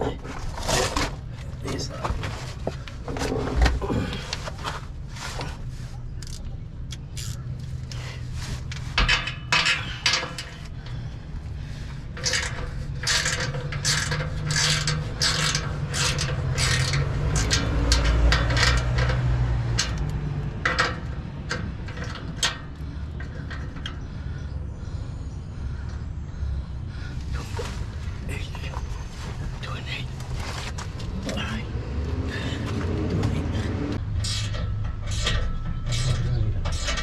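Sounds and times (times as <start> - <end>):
low steady hum: 0.0 - 37.0
rasping scraping strokes: 11.8 - 20.1, 32.3 - 37.0.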